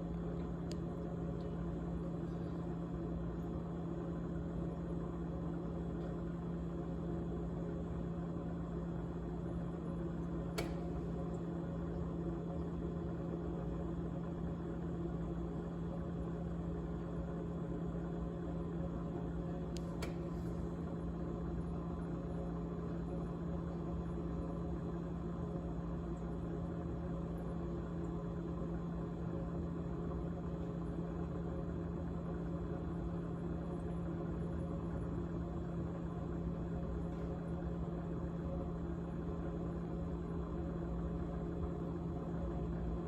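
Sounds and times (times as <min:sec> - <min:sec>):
refrigerator buzzing hum: 0:00.0 - 0:43.0
sharp click: 0:10.5 - 0:11.0, 0:19.8 - 0:20.5.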